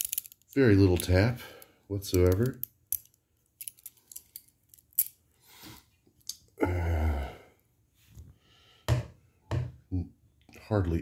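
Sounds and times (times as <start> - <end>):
person sighing: 6.6 - 7.6.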